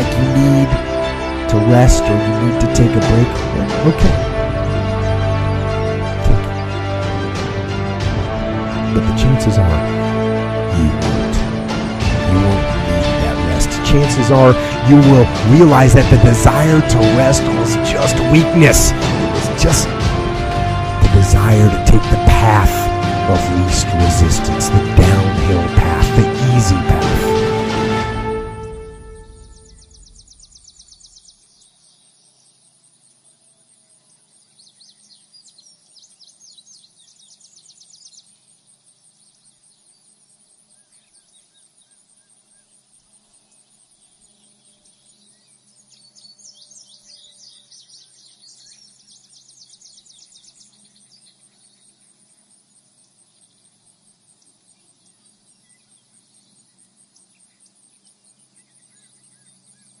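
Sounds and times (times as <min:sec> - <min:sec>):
crickets chirping: 0:00.0 - 1:00.0
rapid insect trilling: 0:28.6 - 1:00.0.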